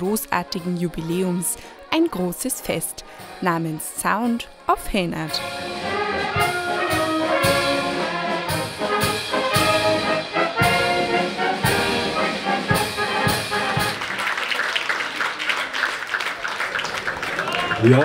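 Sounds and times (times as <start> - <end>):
brass band playing: 0.0 - 14.3
people clapping: 13.4 - 18.0.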